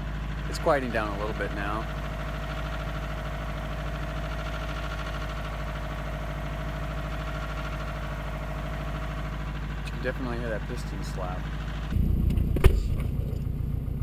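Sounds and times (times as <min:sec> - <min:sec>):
car engine idling: 0:00.0 - 0:14.0.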